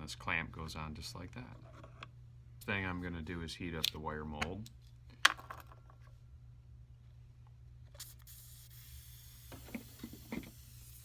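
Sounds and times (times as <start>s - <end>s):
gas torch hissing: 8.0s - 11.0s.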